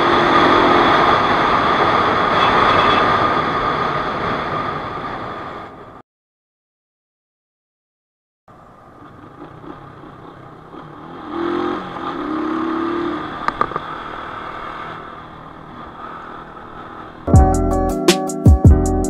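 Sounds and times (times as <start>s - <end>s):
steady tone: 0.0s - 3.7s
motorcycle engine running: 8.8s - 17.6s.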